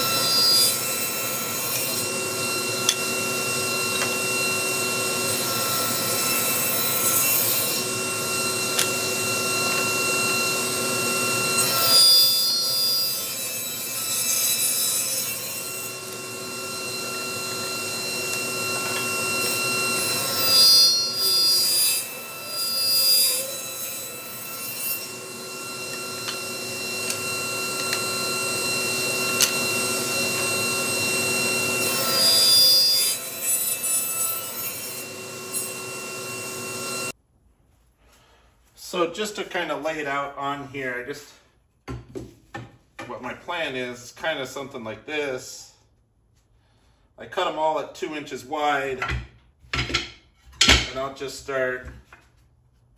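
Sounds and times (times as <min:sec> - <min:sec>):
power saw cutting wood: 0:00.0 - 0:37.1.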